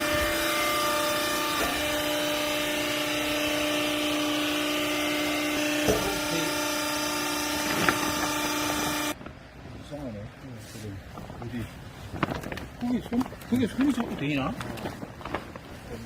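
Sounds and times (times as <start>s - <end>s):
hydraulic baler motor whining: 0.0s - 9.2s.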